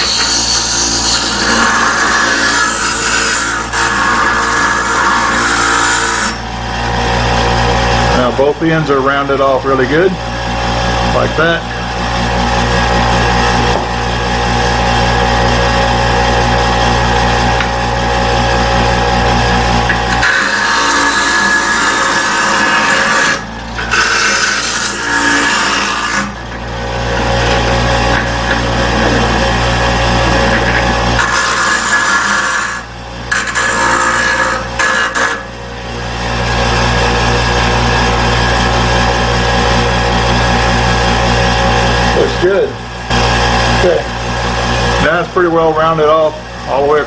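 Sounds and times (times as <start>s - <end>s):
electric grinder grinding aluminum: 0.0s - 8.5s, 10.0s - 47.0s
motor whine: 26.2s - 31.3s.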